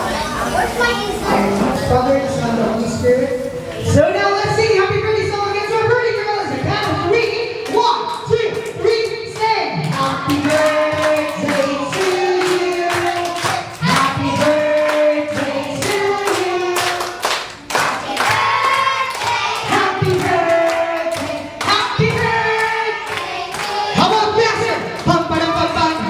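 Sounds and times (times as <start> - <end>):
group of voices singing: 8.3 - 26.0
hand claps: 8.5 - 23.8.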